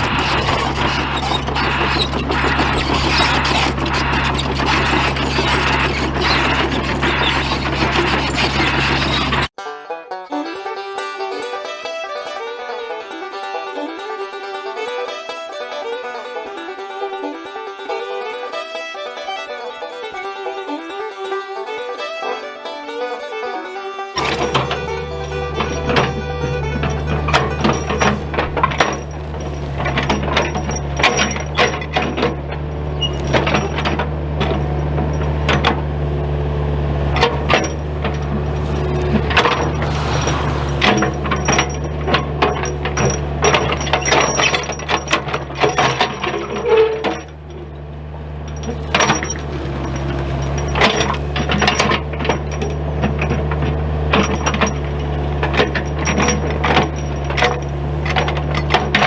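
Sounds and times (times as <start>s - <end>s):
machine humming: 24.2s - 31.8s.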